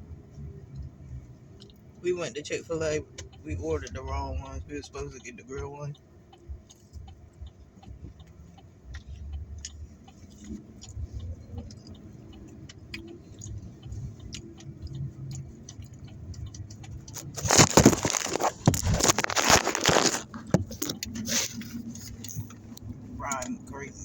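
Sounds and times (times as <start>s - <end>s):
paper packaging crackling: 17.2s - 20.8s.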